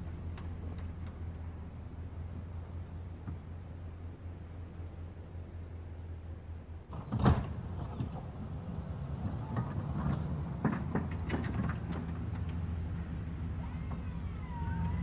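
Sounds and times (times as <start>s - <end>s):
snowplow blade scraping: 0.0s - 15.0s
truck engine running low: 0.0s - 15.0s.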